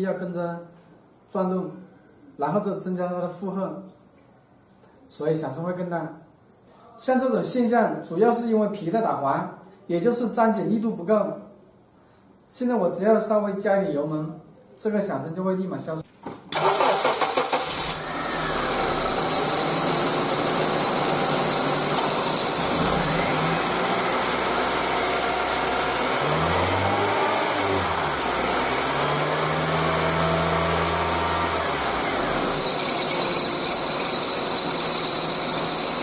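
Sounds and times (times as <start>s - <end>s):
car engine revving: 16.6s - 36.0s
drive belt squealing: 18.7s - 24.0s, 25.8s - 36.0s.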